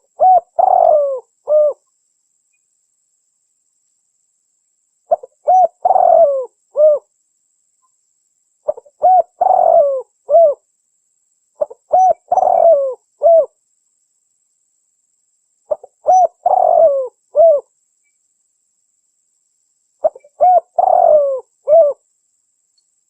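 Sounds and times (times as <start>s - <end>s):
dove cooing: 0.0s - 1.8s, 5.1s - 7.1s, 8.7s - 10.6s, 11.6s - 13.5s, 15.7s - 17.7s, 20.0s - 22.0s.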